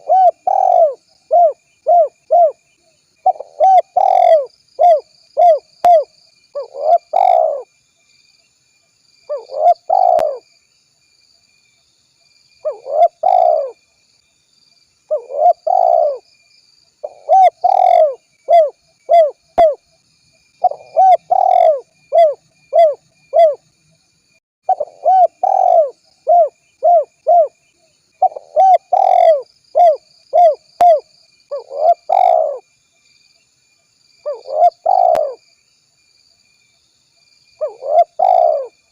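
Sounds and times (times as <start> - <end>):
dove cooing: 0.0 - 2.6, 3.2 - 7.7, 9.3 - 10.4, 12.6 - 13.8, 15.1 - 16.2, 17.0 - 19.8, 20.6 - 23.6, 24.7 - 27.6, 28.2 - 32.6, 34.2 - 35.4, 37.6 - 38.8.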